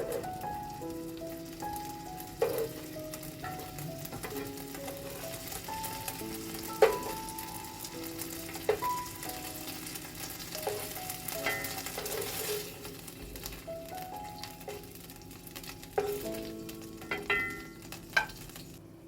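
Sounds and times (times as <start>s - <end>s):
chicken sizzling in a frying pan: 0.0s - 18.8s
utensil knocking against pan: 6.7s - 7.2s, 8.6s - 9.0s.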